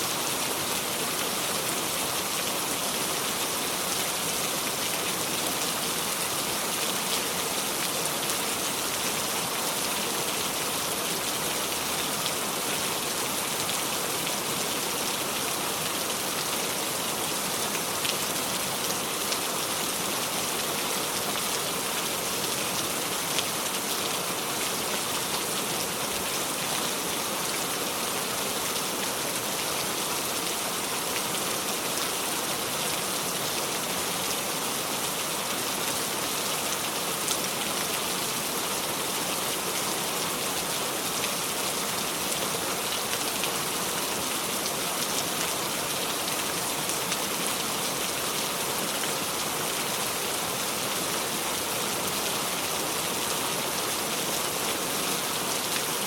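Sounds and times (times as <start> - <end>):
heavy rain falling: 0.0 - 56.0.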